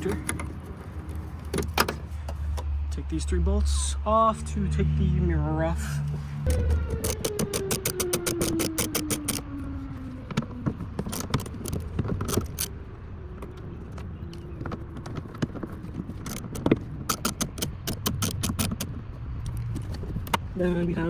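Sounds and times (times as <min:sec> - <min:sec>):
socket ratchet clicking: 0:06.5 - 0:09.5, 0:16.2 - 0:19.9.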